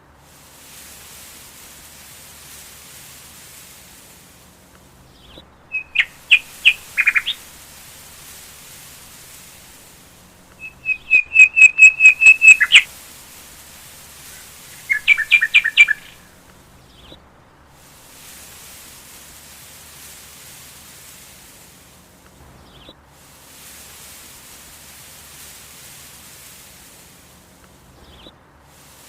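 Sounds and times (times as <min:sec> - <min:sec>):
steady background hiss: 0:00.0 - 0:29.0
bird chirping: 0:05.1 - 0:07.6, 0:10.5 - 0:12.9, 0:14.3 - 0:17.2.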